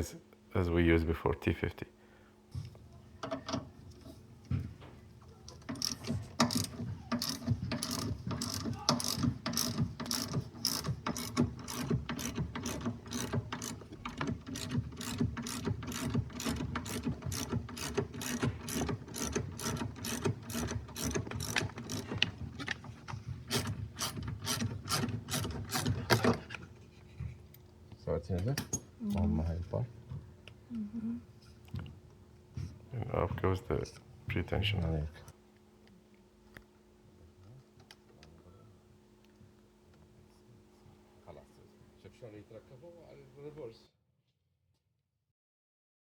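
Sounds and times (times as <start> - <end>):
hand ratchet clicking: 5.7 - 22.7, 23.5 - 26.4.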